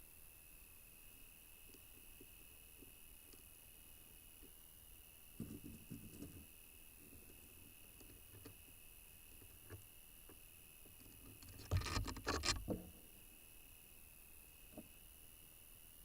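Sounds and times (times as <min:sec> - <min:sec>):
steady faint hiss: 0:00.0 - 0:16.0
faint ticks: 0:01.6 - 0:04.6, 0:05.4 - 0:12.9
birds scratching and tapping: 0:05.4 - 0:08.6, 0:09.4 - 0:12.9.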